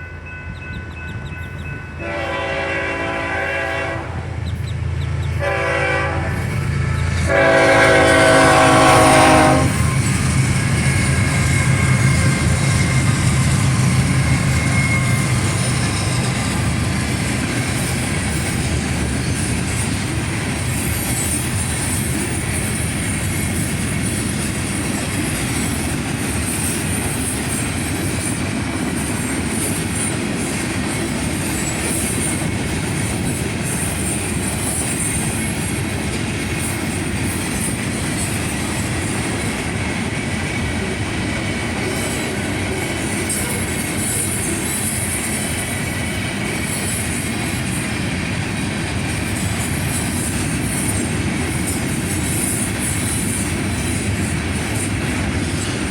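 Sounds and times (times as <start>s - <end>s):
freight train rolling past: 0.0s - 55.9s
steel wheels rumbling on rail: 0.0s - 55.9s
high wheel squeal: 9.7s - 19.8s.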